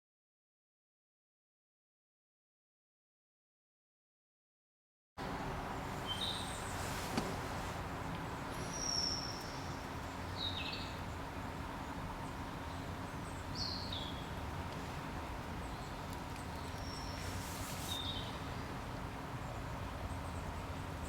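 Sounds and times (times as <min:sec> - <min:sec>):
background hiss: 0:05.2 - 0:21.0
kingfisher whistled calls: 0:08.6 - 0:09.8, 0:16.8 - 0:18.6.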